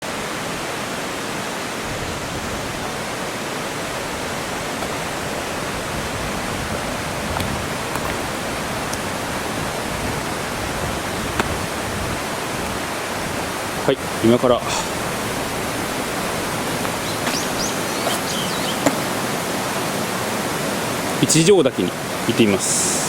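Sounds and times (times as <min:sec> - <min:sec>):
flowing water rushing: 0:00.0 - 0:23.0.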